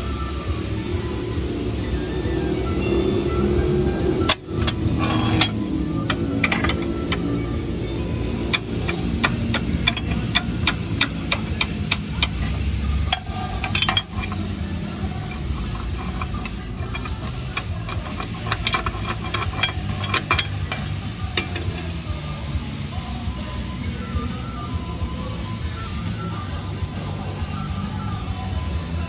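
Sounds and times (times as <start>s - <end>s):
engine running low rumble: 0.0s - 29.0s
drivetrain clicks and knocks: 4.1s - 22.2s.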